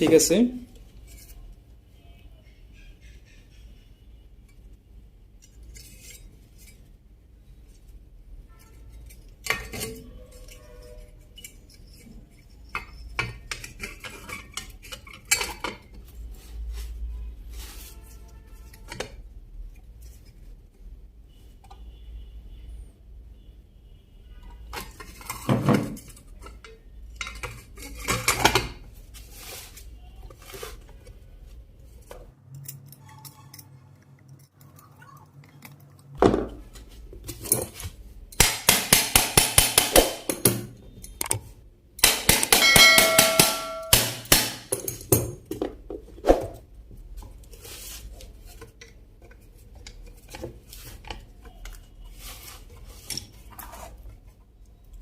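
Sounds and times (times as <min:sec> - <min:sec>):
metal tools clicking and knocking: 0:08.6 - 0:16.0, 0:24.7 - 0:28.8, 0:32.1 - 0:36.2, 0:37.2 - 0:45.7
metal parts clattering: 0:27.2 - 0:29.8.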